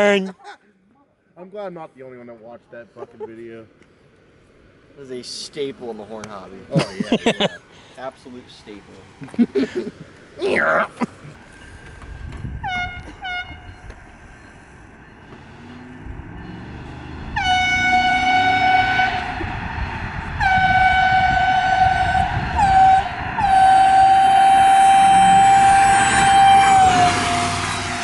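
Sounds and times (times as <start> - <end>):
low vehicle rumble: 3.7 - 28.0
air horn blasts: 12.6 - 13.8, 17.3 - 28.0.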